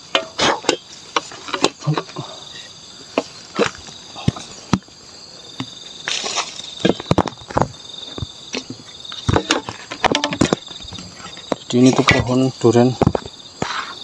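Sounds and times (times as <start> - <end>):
insects trilling: 0.0 - 14.0
knocks and scrapes on ladder: 6.1 - 12.4.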